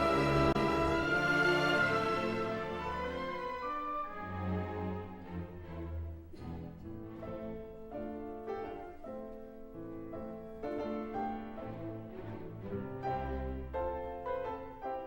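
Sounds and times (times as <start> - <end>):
classical instrumental music: 0.0 - 15.0.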